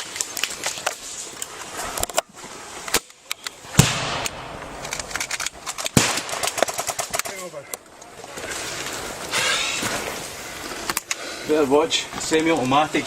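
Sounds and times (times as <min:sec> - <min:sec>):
airsoft guns firing: 0:03.7 - 0:07.6.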